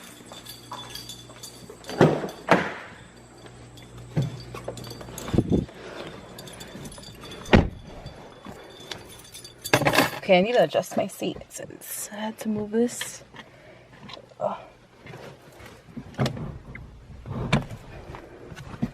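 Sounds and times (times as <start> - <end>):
keys jingling: 0.0 - 10.7.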